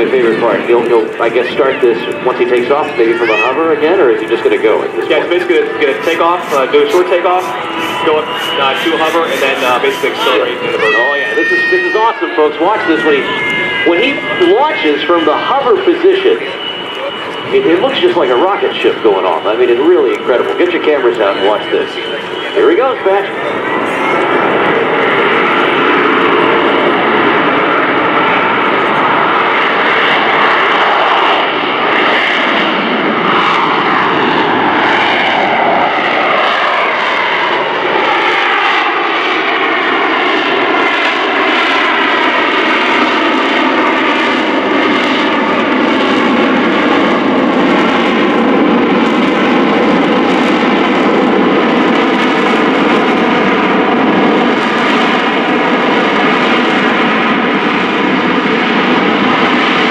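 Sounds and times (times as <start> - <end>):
jet engine whine: 0.0 - 59.9.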